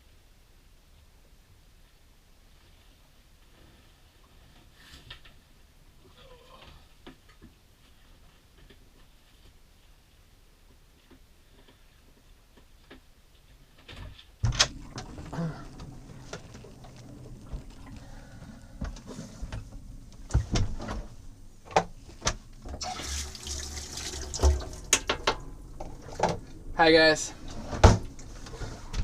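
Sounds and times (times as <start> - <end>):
tap water running into sink: 14.5 - 20.8, 22.6 - 26.4.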